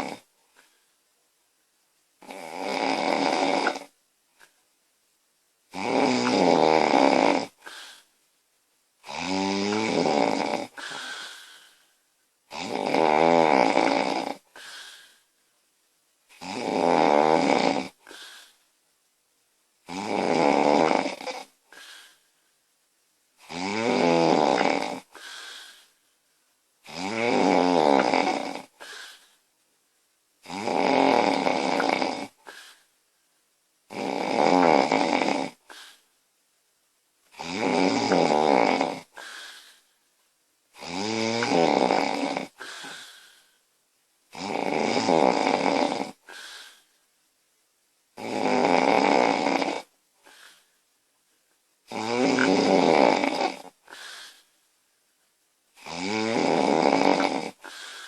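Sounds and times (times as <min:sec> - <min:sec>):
woman snoring: 0:00.0 - 0:00.3, 0:02.2 - 0:03.9, 0:05.7 - 0:08.1, 0:09.0 - 0:11.8, 0:12.5 - 0:15.2, 0:16.4 - 0:18.6, 0:19.9 - 0:22.2, 0:23.4 - 0:25.9, 0:26.8 - 0:29.2, 0:30.4 - 0:32.8, 0:33.9 - 0:36.0, 0:37.4 - 0:39.8, 0:40.8 - 0:43.4, 0:44.3 - 0:46.9, 0:48.2 - 0:50.7, 0:51.9 - 0:54.4, 0:55.8 - 0:58.0
faint breath: 0:10.8 - 0:12.0, 0:14.5 - 0:15.4, 0:25.1 - 0:26.1, 0:32.4 - 0:33.0, 0:39.1 - 0:40.0, 0:42.6 - 0:43.6, 0:46.2 - 0:47.0, 0:50.2 - 0:50.8, 0:53.8 - 0:54.6, 0:57.6 - 0:58.0.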